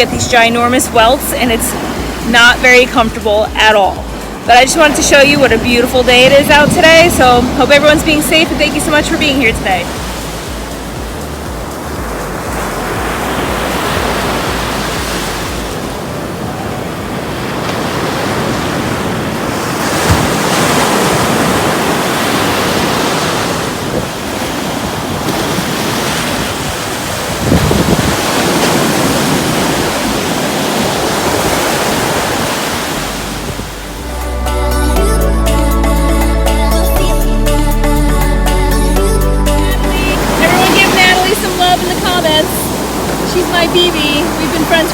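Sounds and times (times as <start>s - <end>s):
wind buffeting microphone: 0.0s - 34.0s, 40.0s - 44.9s
ocean surf at shoreline: 0.0s - 36.9s, 37.7s - 44.9s.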